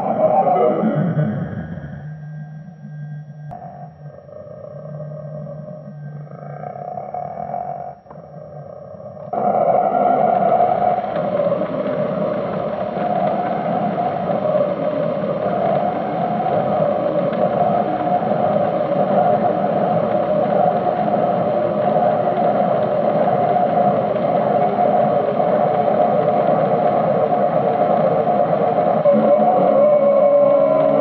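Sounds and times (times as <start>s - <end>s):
toy belt electronic drone: 0.0s - 22.8s.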